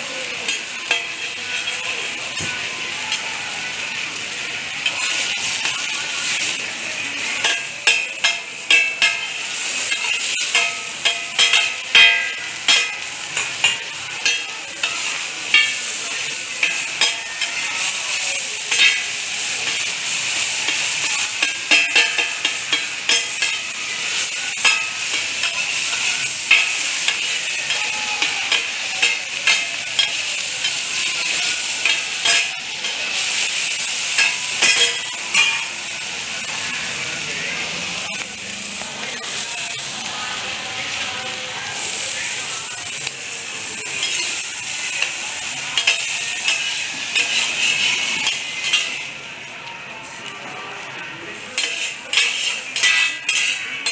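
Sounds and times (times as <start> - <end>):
omelette sizzling in pan: 0.0 - 53.9
spatula scraping pan: 7.2 - 35.8, 44.0 - 49.1, 51.6 - 53.9.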